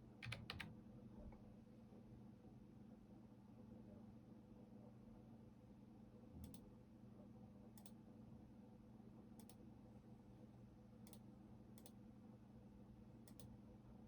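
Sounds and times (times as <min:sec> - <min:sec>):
computer mouse clicks: 0:00.2 - 0:00.7, 0:06.4 - 0:06.7, 0:07.8 - 0:08.0, 0:09.4 - 0:09.6, 0:11.0 - 0:12.0, 0:13.2 - 0:13.6.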